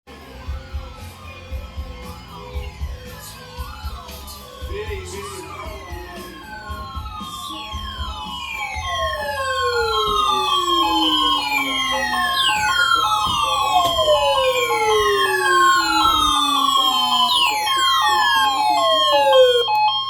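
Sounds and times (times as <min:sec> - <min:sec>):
siren-like falling sweeps: 0:01.0 - 0:20.0
pulsing alert tone: 0:05.0 - 0:20.0.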